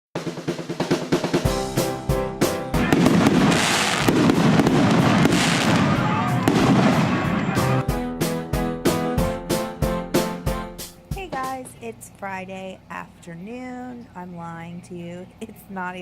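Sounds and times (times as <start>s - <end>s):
intro music with drum hits: 0.2s - 11.7s
fireworks crackling: 2.8s - 7.6s.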